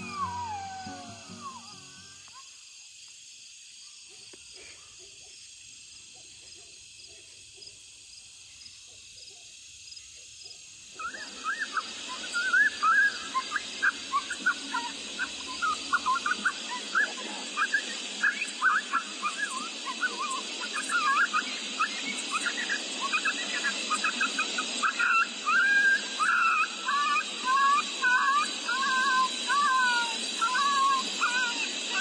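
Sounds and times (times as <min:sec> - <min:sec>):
coyote yips and howls: 0:00.0 - 0:02.4, 0:10.9 - 0:32.0
night insects chorus: 0:00.0 - 0:32.0.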